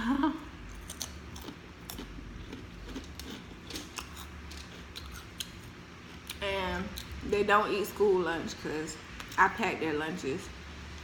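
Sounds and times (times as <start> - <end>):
low steady hum: 0.0 - 11.0
close chewing with crackles: 0.6 - 7.3.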